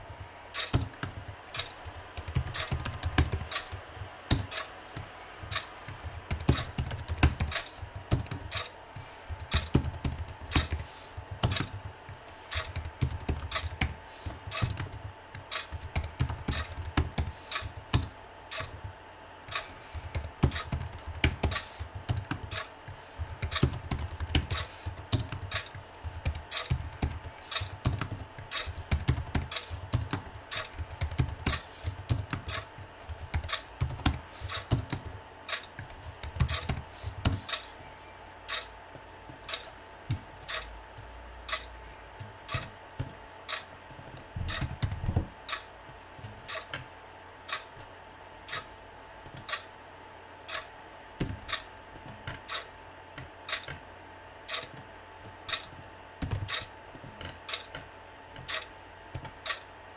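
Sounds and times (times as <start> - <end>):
faint steady hum: 0.0 - 59.9
typing on keyboard: 0.6 - 18.9, 19.5 - 37.7, 44.1 - 45.6, 55.5 - 56.7.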